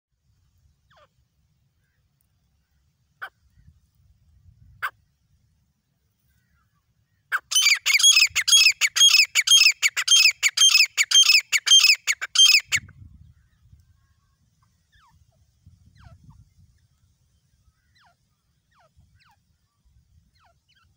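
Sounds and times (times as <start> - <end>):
bird calling ringing notes: 7.3 - 12.8.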